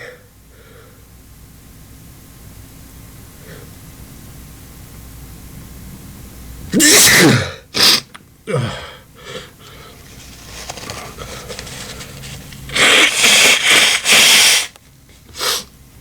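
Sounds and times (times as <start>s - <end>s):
man sneezing: 6.7s - 8.9s, 12.7s - 14.7s.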